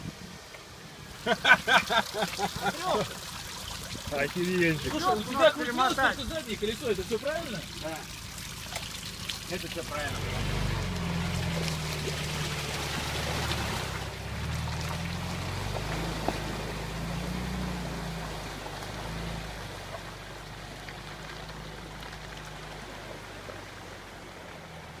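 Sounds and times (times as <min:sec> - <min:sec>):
water splashing under wheels: 0:00.0 - 0:25.0
off-road vehicle engine revving: 0:04.0 - 0:23.8.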